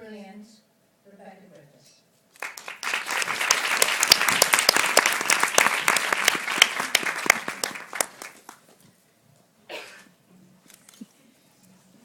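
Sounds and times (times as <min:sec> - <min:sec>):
audience applauding: 0:02.4 - 0:08.7.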